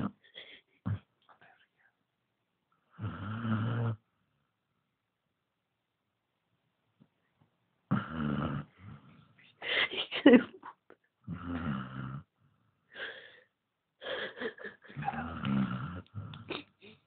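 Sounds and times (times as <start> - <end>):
dog snoring: 2.9 - 4.0, 7.9 - 9.1, 11.3 - 12.3, 15.0 - 16.5.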